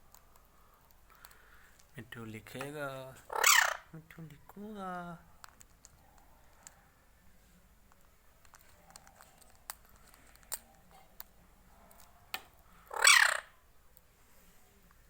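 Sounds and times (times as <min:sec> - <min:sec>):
parrot squawk: 0:03.3 - 0:03.9, 0:12.8 - 0:13.6.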